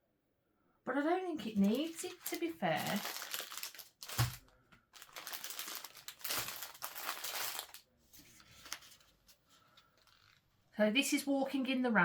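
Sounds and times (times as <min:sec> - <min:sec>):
plastic packaging crinkling: 0:01.4 - 0:10.5.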